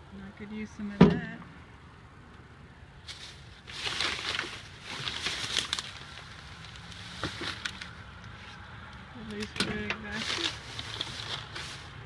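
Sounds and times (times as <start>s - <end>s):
bags and packaging rustling: 3.1s - 8.6s, 9.2s - 12.0s.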